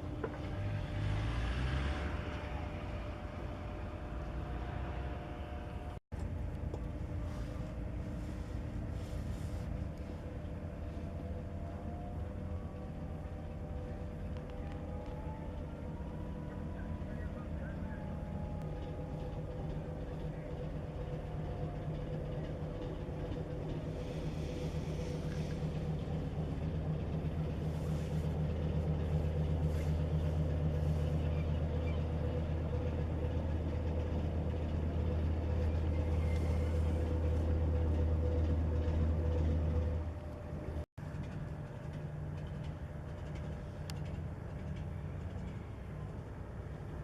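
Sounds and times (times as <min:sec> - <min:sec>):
ship diesel engine droning: 0:00.0 - 0:47.0.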